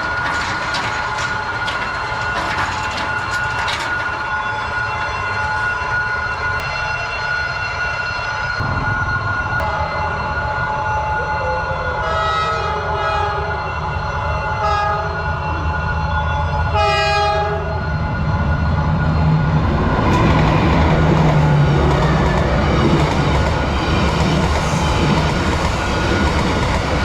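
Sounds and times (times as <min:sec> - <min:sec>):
train wheels clattering over rails: 0:00.0 - 0:05.8, 0:19.7 - 0:27.0
train horn blasts: 0:11.0 - 0:13.8, 0:14.5 - 0:15.4, 0:16.6 - 0:17.8.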